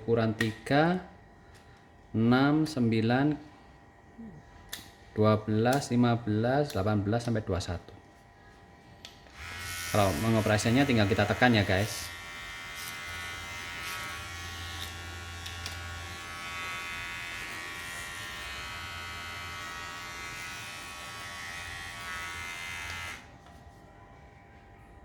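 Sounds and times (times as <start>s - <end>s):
hair clipper buzzing: 9.3s - 23.3s.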